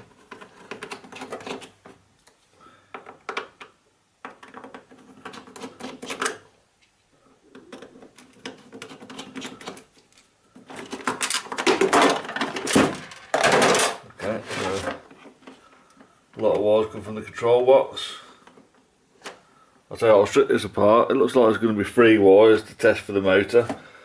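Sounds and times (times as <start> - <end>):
clicks and rattles of metal and plastic parts: 0.0 - 6.5, 7.5 - 14.0.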